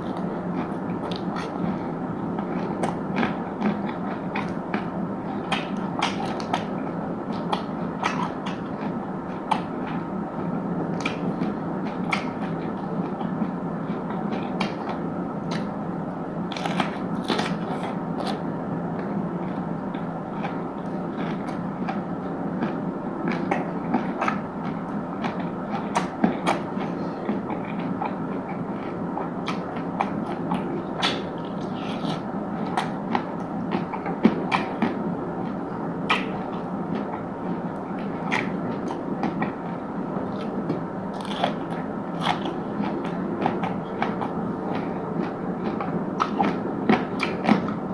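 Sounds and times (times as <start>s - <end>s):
person chewing crunchy food: 0.0s - 15.8s, 16.4s - 47.9s
steady background noise: 0.0s - 47.9s
wet mouth clicks: 36.1s - 36.4s.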